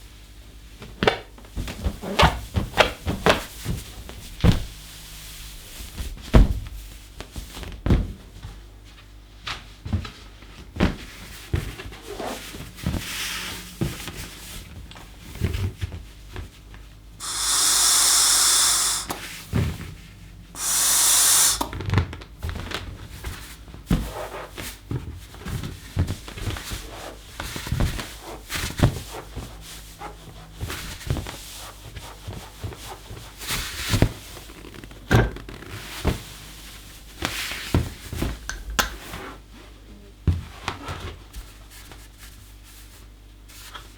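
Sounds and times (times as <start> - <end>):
balloon rubbing and squeaking: 17.2 - 19.2, 20.6 - 21.7
breath blowing into balloon: 17.2 - 19.4, 20.6 - 21.8.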